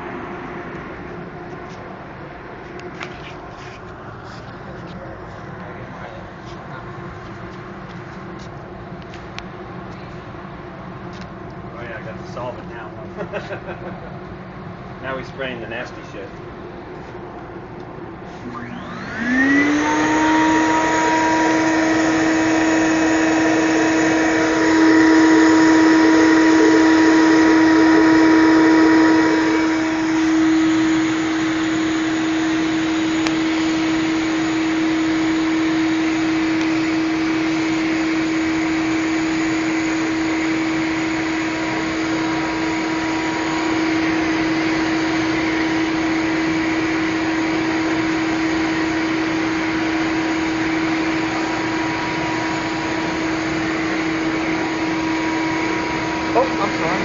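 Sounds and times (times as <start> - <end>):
paint sprayer motor running: 18.3 - 57.0.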